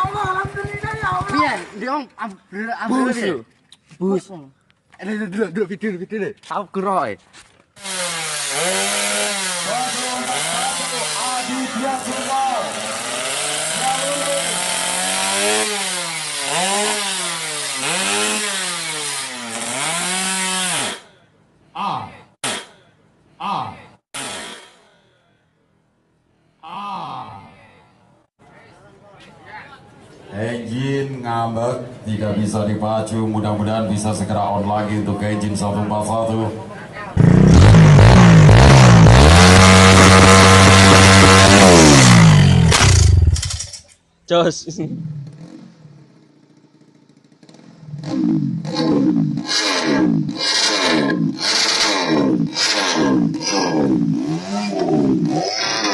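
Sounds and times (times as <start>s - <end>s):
motorcycle engine revving: 7.8s - 20.9s, 37.2s - 43.8s, 44.8s - 55.9s.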